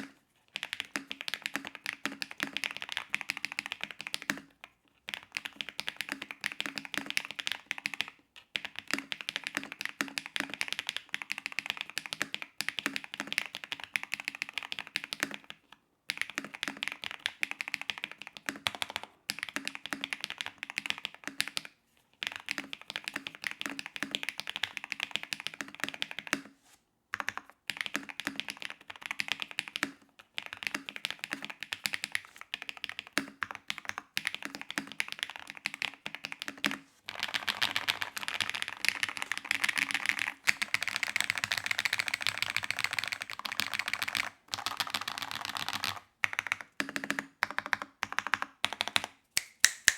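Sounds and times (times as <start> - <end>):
mechanical keyboard typing: 30.4 - 49.9.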